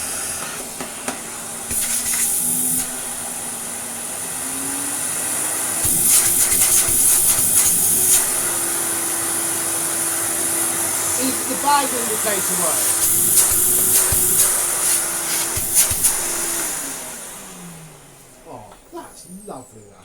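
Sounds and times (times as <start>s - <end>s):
vacuum cleaner running: 0.0s - 19.9s.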